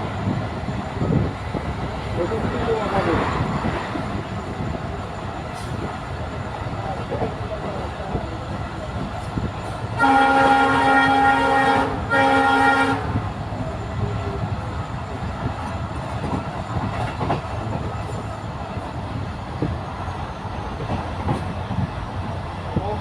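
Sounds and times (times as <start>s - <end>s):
train wheels clickety-clack: 0.3s - 11.3s, 13.2s - 23.0s
train horn blasts: 10.0s - 13.2s.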